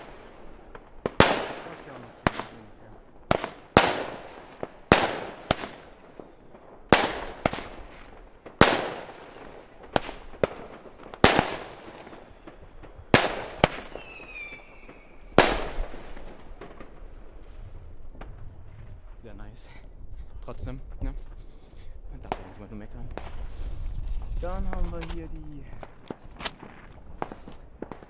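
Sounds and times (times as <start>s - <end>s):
firework bangs: 0.0s - 19.2s, 22.2s - 28.0s
falling firework whistle: 13.7s - 15.4s.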